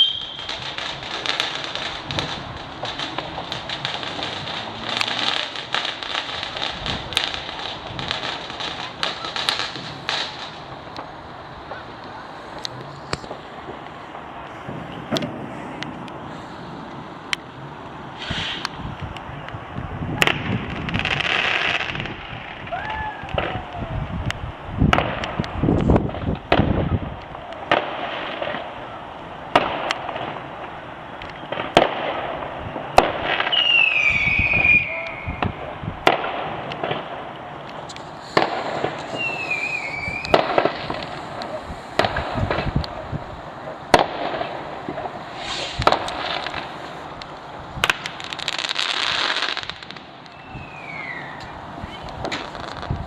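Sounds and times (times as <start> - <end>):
falling firework whistles: 0.0 - 8.2, 18.2 - 18.8, 32.7 - 37.0, 37.9 - 43.0, 43.9 - 47.0, 47.8 - 53.0
crackling firework burst: 0.0 - 53.0
fireworks bangs: 0.0 - 53.0.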